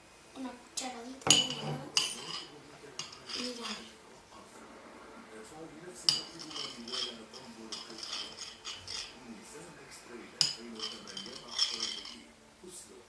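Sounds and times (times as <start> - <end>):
spoon scraping a bowl: 1.4 - 4.0, 6.1 - 9.3, 10.4 - 12.3.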